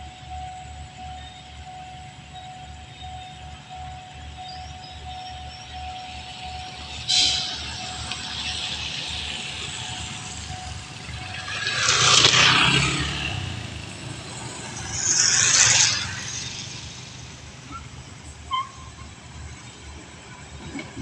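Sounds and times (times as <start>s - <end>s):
low rhythmic rumble: 0.0s - 20.6s
vehicles passing close by: 0.0s - 21.0s.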